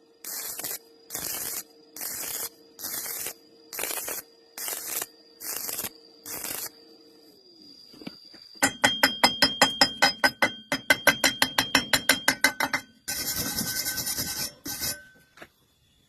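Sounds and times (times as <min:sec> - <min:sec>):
hammer striking steel: 0:08.6 - 0:15.2.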